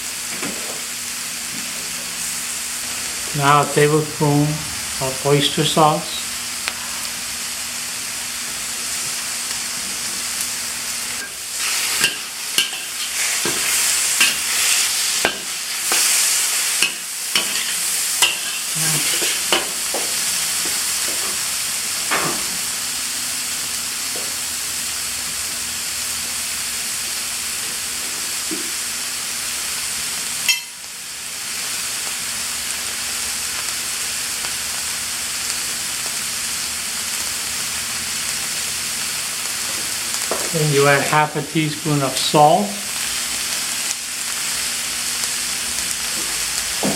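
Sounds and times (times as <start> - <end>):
vegetables sizzling in a pan: 0.0 - 46.9
spatula scraping and knocking pan: 12.0 - 16.2.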